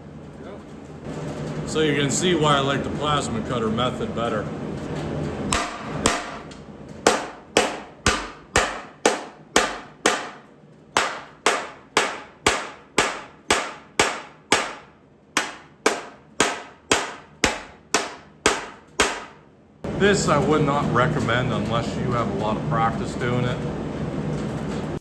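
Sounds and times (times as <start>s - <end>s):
hammer striking steel rivets: 5.5s - 19.4s.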